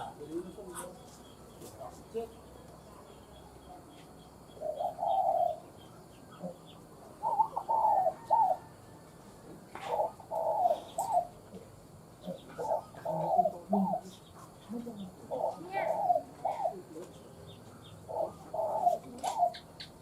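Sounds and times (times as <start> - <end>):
dove cooing: 4.4 - 9.1, 9.7 - 20.0.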